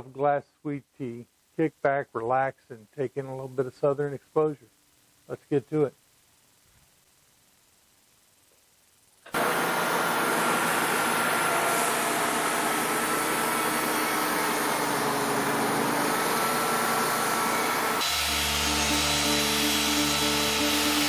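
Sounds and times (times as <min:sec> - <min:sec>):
band saw cutting log: 0:09.3 - 0:21.0.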